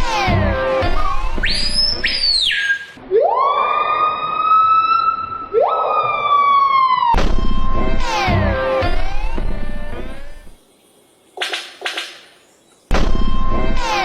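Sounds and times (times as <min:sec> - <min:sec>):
high whistle rising and falling: 0:01.4 - 0:08.0
siren-like wails: 0:02.8 - 0:10.6, 0:13.1 - 0:14.0.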